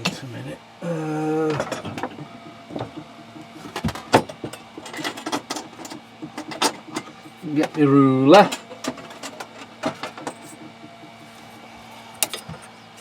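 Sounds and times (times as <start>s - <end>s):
man humming: 0.8s - 3.0s
tools clicking and knocking: 1.6s - 7.8s, 8.5s - 11.2s, 12.2s - 12.7s.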